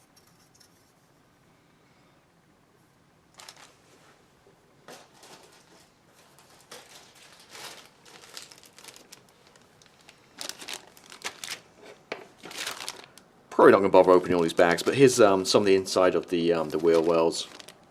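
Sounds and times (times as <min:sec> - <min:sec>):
plastic bags crinkling: 0:03.3 - 0:03.9, 0:05.1 - 0:17.9.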